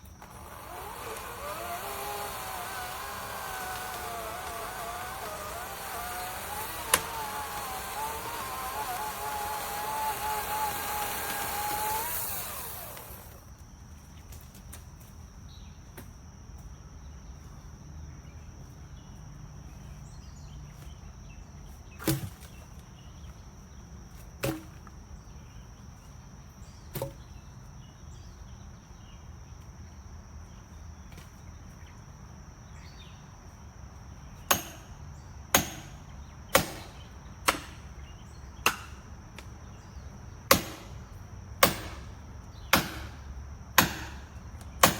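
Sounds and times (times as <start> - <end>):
chainsaw electric motor: 0.0 - 13.6, 40.5 - 42.2, 42.8 - 44.9
sharp knocks: 40.5 - 41.0, 42.7 - 43.2.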